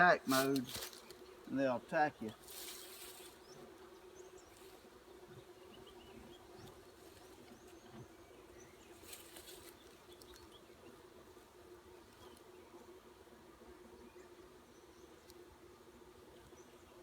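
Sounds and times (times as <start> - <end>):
honeybees buzzing: 0.0 - 17.0.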